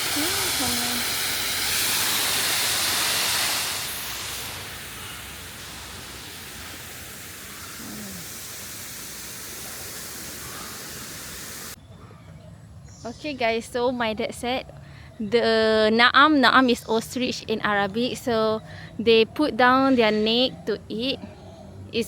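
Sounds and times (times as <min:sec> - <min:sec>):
rushing hiss: 0:00.0 - 0:11.8.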